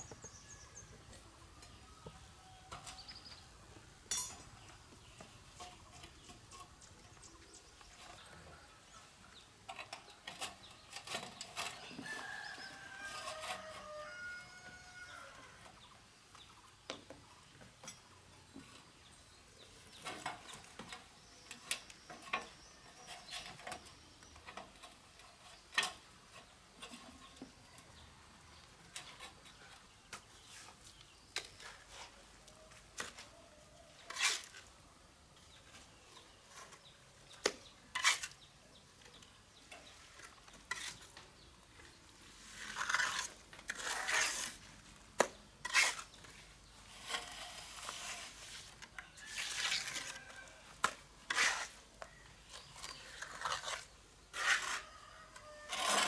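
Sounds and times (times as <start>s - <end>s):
trowel clinking on bricks: 4.1s - 4.6s
trowel scraping cement: 34.0s - 34.8s, 37.9s - 38.5s, 39.9s - 56.0s.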